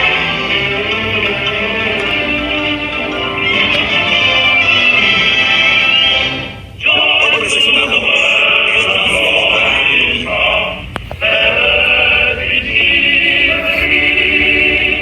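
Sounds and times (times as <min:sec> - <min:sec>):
music with choir singing: 0:00.0 - 0:15.0.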